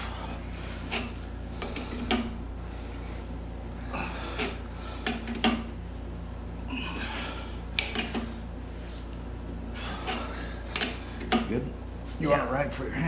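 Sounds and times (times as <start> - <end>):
low hum: 0.0 - 13.0.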